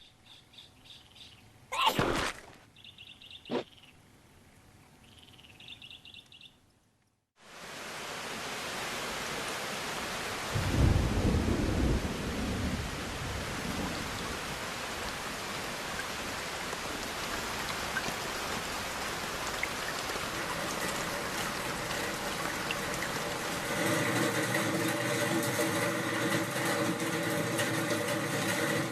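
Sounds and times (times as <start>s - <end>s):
heavy rain: 7.4s - 28.9s
low roll of thunder: 10.5s - 15.2s.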